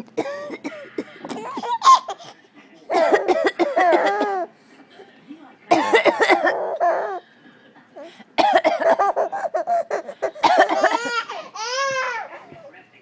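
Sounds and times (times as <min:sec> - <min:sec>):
fake coughs: 0:00.2 - 0:02.0, 0:02.9 - 0:04.4, 0:05.7 - 0:06.6, 0:08.4 - 0:09.4, 0:10.3 - 0:11.1
baby laughing: 0:06.5 - 0:07.2, 0:08.9 - 0:12.2.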